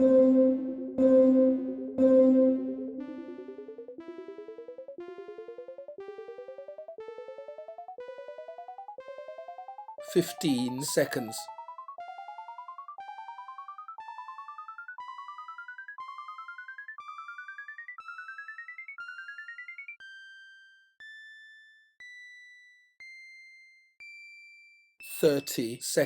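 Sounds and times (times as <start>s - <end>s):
rising synthesizer notes: 0.0s - 5.9s.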